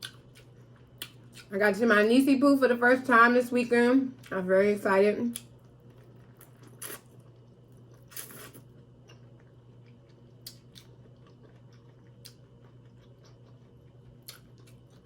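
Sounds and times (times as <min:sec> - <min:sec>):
person chewing and smacking: 0:00.0 - 0:01.5, 0:05.4 - 0:15.0.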